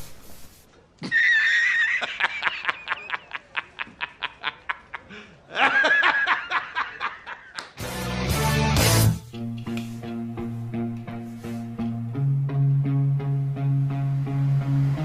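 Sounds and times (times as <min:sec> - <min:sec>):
high-pitched rapid laughter: 0:01.0 - 0:07.6.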